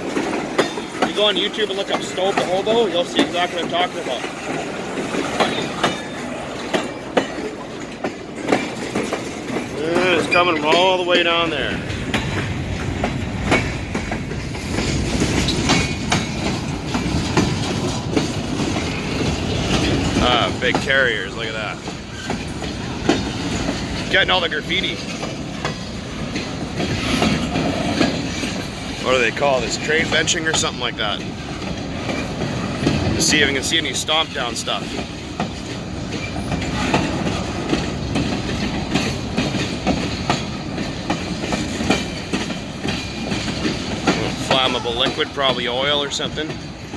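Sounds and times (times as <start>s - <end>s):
freight train rumbling past: 0.0s - 46.9s
wheels clacking over rail joints: 0.0s - 46.9s.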